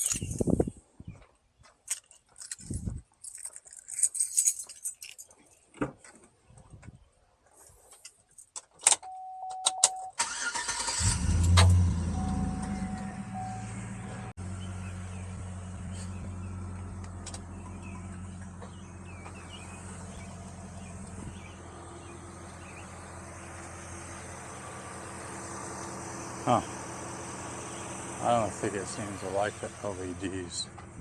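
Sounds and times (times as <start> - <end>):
car engine starting and idling: 9.1 - 31.0.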